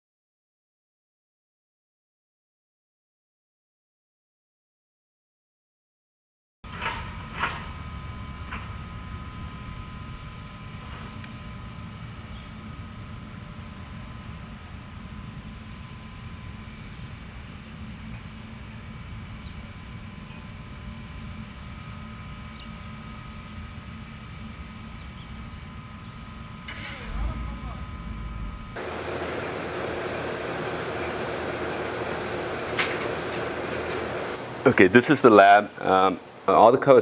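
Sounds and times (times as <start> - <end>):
faint machine whining tones: 6.8 - 37.0
factory machinery rumble: 26.2 - 37.0.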